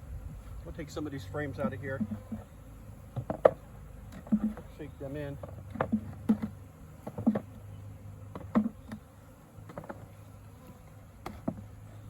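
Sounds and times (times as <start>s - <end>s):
bee swarm buzzing: 0.0s - 12.0s
sharp knocks on hive box: 1.5s - 7.6s, 8.3s - 11.7s.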